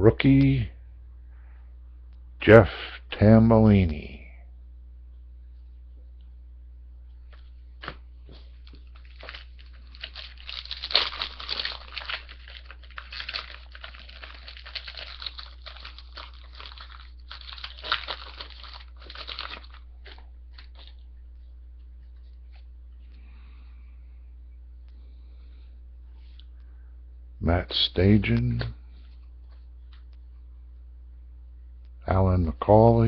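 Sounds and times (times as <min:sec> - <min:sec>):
steady low hum: 0:00.0 - 0:33.0
cards being handled: 0:07.2 - 0:23.1
card wrapper tearing and crinkling: 0:07.8 - 0:21.0.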